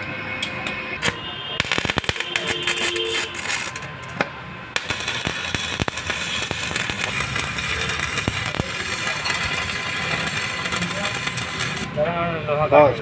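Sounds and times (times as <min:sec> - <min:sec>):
welding arc sharp snaps: 0:00.4 - 0:04.2, 0:04.8 - 0:11.9
arc welding crackling hiss: 0:01.0 - 0:03.9, 0:04.8 - 0:11.9.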